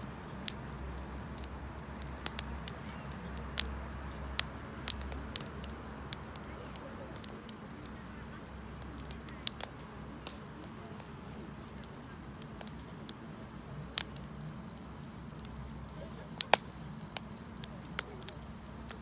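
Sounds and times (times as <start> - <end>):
campfire crackles and pops: 0.0 - 19.0
steady low rumble: 0.0 - 19.0.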